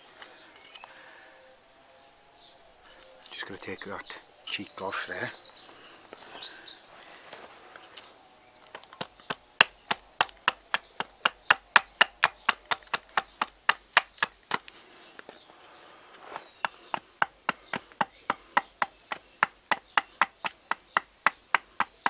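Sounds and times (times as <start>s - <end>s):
axe chopping wood: 8.7s - 14.8s, 16.4s - 22.0s.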